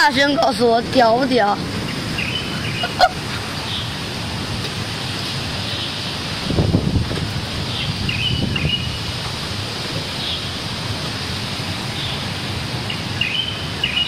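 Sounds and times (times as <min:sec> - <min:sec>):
wind buffeting the microphone: 0:00.0 - 0:13.3
strong wind: 0:00.0 - 0:14.0
bird chirping: 0:01.9 - 0:04.0, 0:12.8 - 0:14.0.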